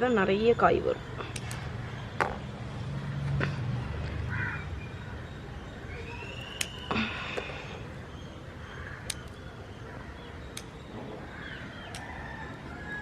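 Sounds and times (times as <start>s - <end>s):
bird calling: 4.3s - 13.0s.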